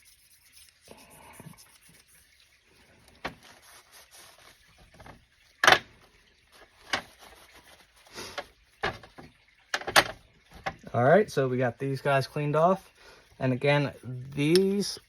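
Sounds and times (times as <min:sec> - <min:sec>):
hands scuffing metal gun parts: 0:03.2 - 0:03.9.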